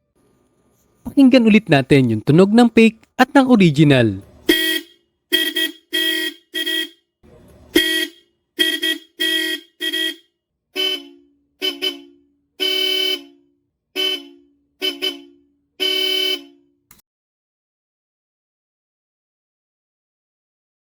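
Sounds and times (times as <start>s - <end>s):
single-tone car horn toots: 4.5s - 7.0s, 7.8s - 10.2s, 10.8s - 16.8s
two-tone car horn toots: 4.5s - 7.0s, 7.8s - 16.8s.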